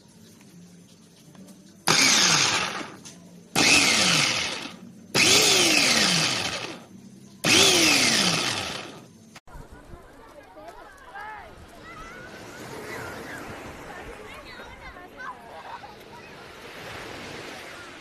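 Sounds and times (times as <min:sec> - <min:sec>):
electric meat grinder pulses: 0:01.9 - 0:03.0, 0:03.6 - 0:06.8, 0:07.4 - 0:09.1.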